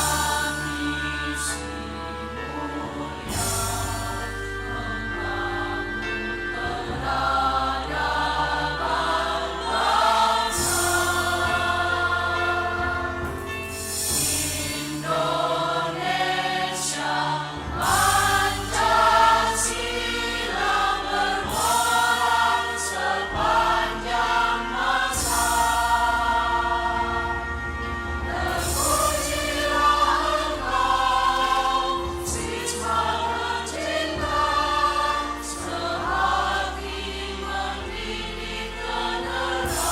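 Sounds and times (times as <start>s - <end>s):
choir singing: 0.0s - 39.9s
symphony orchestra: 0.0s - 39.9s.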